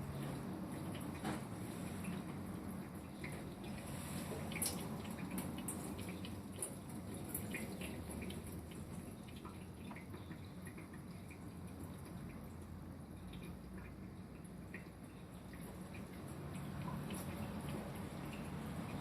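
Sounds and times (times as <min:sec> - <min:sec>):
water drips and splashes: 0:00.0 - 0:19.0
tap running into a sink: 0:00.2 - 0:02.4.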